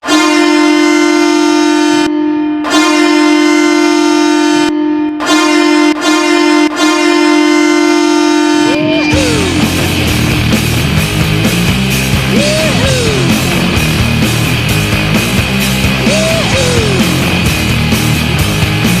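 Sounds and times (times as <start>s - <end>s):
arena goal horn blasting: 0.0s - 10.0s.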